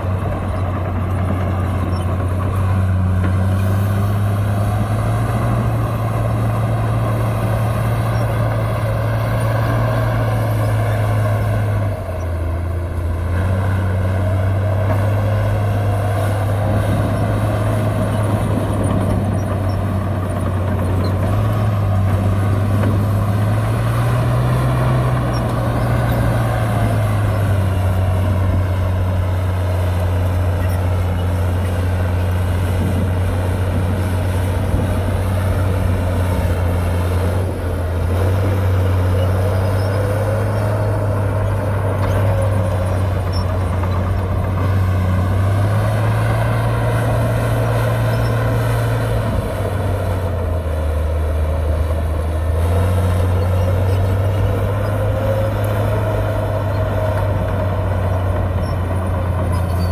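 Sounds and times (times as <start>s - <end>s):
heavy diesel engine running: 0.0s - 59.9s.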